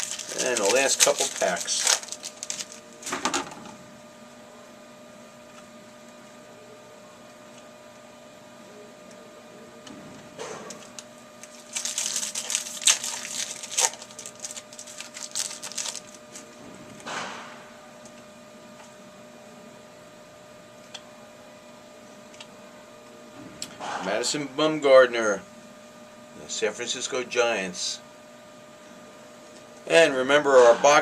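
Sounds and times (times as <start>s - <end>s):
foil wrappers tearing and crinkling: 0.0s - 3.2s, 10.9s - 16.5s
cards shuffled: 0.0s - 3.3s, 10.8s - 16.4s
faint steady hum: 0.0s - 31.0s.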